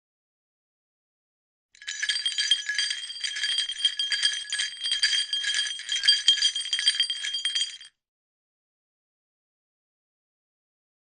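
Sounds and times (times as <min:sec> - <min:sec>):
sleigh bells jingling: 0:01.8 - 0:07.9.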